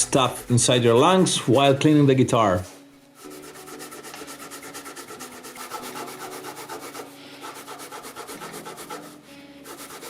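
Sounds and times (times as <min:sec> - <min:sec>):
eraser scratching metal frets: 0:03.2 - 0:10.0.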